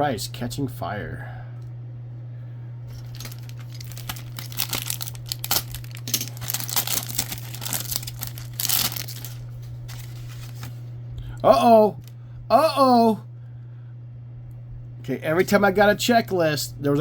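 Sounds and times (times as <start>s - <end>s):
low electrical hum: 0.0s - 17.0s
plastic wrapper crinkling and tearing: 2.9s - 10.8s.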